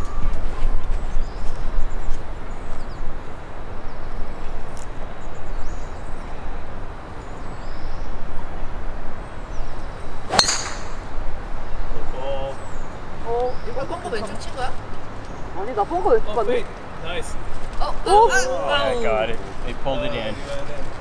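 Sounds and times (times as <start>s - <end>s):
golf club striking ball: 10.2s - 11.4s.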